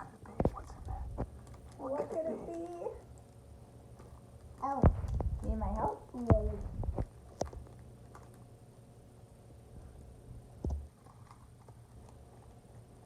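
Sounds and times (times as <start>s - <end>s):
plastic packet clicks and crinkles: 1.2s - 5.3s, 6.9s - 8.5s, 10.9s - 12.6s
soft low bump: 4.8s - 7.1s.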